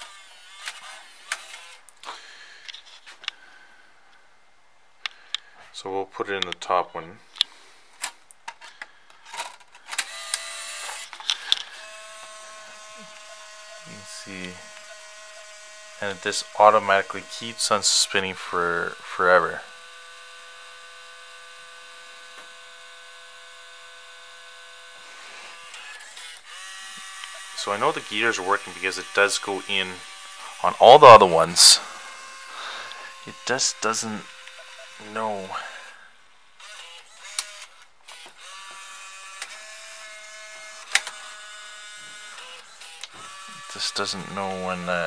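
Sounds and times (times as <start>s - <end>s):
disc changer motor whine: 10.0s - 45.0s.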